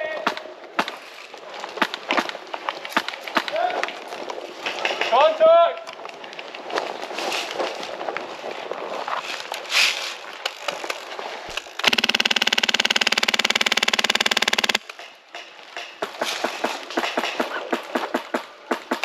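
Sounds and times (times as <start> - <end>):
airsoft gun full-auto burst: 11.8 - 14.8
motor whine: 11.8 - 14.8.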